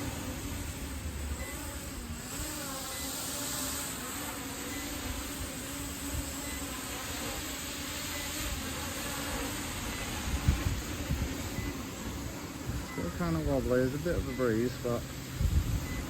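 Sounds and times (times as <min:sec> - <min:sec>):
quadcopter drone buzzing: 0:00.0 - 0:16.0
wind rumbling on microphone: 0:09.7 - 0:14.3, 0:15.1 - 0:16.0.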